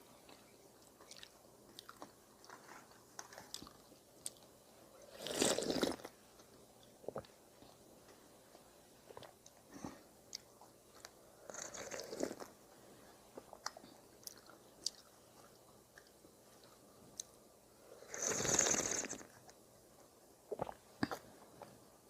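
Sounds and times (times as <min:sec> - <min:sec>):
chewing and crunching: 0:00.3 - 0:04.5, 0:13.4 - 0:17.3.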